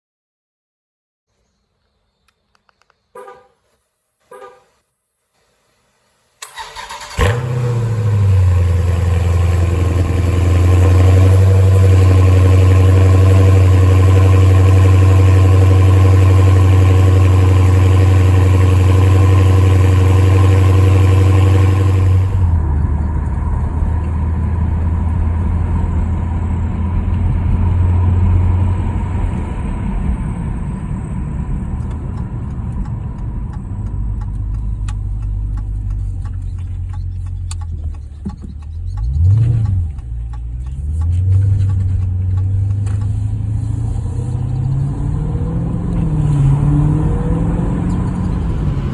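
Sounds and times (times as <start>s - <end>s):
engine starter cranking: 6.4s - 10.2s, 10.8s - 22.6s
car engine idling: 6.4s - 45.2s, 45.8s - 48.9s.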